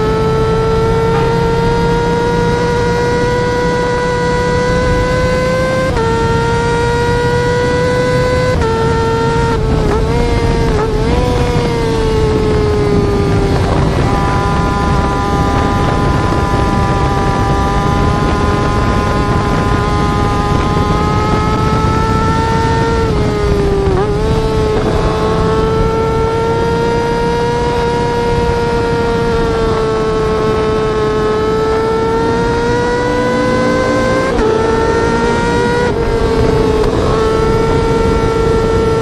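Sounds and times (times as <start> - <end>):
motorcycle engine whining at high revs: 0.0 - 39.0.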